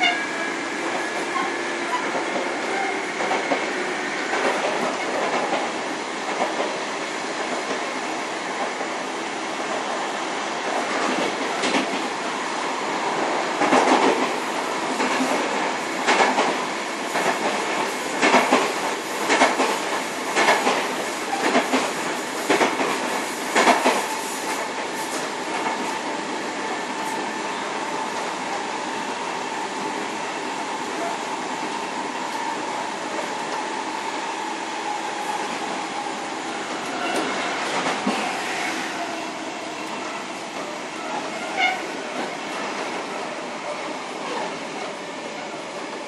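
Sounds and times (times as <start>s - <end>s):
wheels clacking over rail joints: 16.0s - 24.0s.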